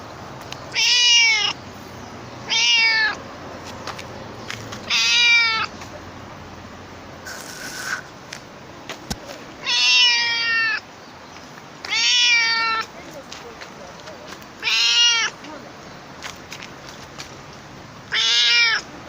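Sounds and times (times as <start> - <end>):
cat meowing loudly: 0.7 - 1.6, 2.5 - 3.2, 4.9 - 5.7, 9.6 - 10.8, 11.8 - 12.9, 14.6 - 15.4, 18.1 - 18.9.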